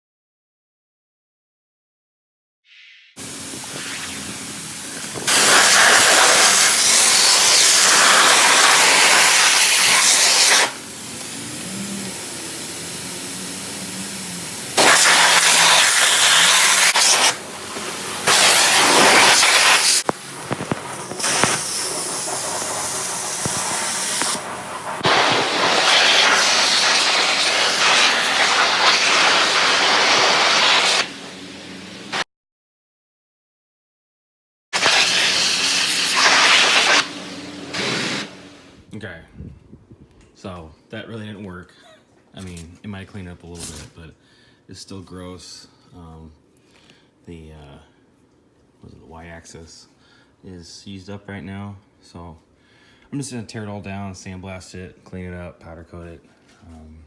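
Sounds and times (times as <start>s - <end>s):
pressure washer spraying water: 3.2s - 32.2s, 34.8s - 38.7s.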